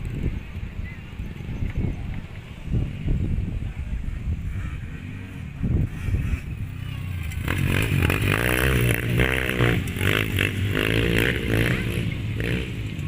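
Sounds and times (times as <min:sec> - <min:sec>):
dirt bike engine revving: 0:04.4 - 0:13.0.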